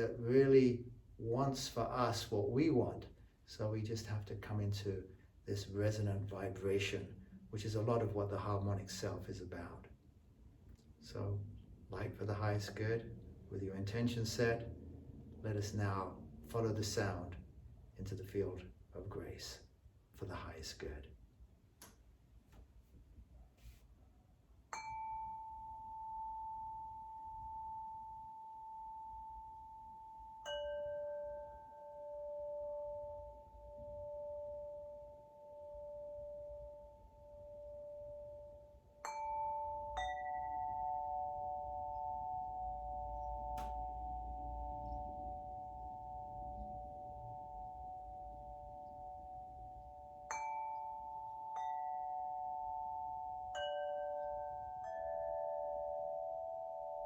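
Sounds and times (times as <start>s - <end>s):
wind chime notes ringing: 24.7s - 57.0s.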